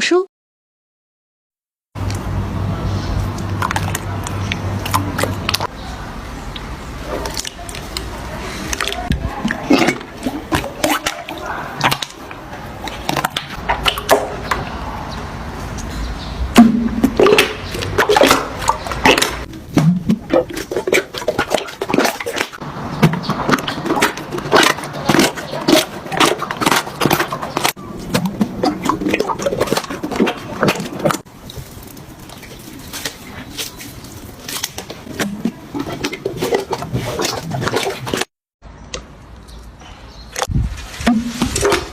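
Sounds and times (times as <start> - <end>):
slime squelching and popping: 6.5 - 14.7, 16.6 - 38.3.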